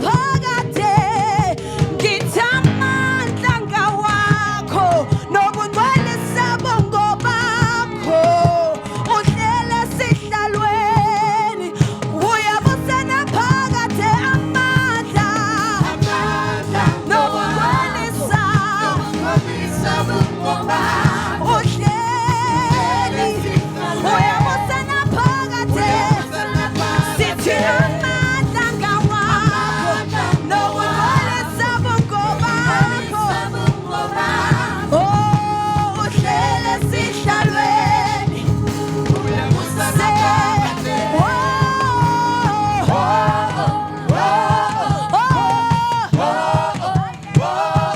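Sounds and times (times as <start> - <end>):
band with steady beat: 11.8 - 47.9
singers holding vibrato notes: 14.0 - 47.9.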